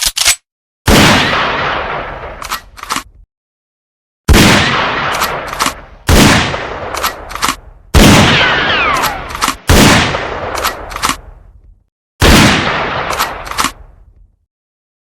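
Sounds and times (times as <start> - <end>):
rifle lever metallic clicks: 0.0 - 0.4, 2.4 - 3.2, 6.9 - 7.6, 9.0 - 9.6, 10.5 - 11.2, 13.1 - 14.3
rifle shots: 0.9 - 2.6, 4.3 - 11.3, 12.2 - 13.9.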